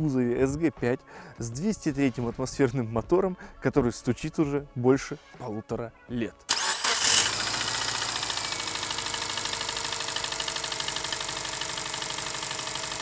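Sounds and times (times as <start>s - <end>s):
car engine idling with knock: 7.4s - 13.0s.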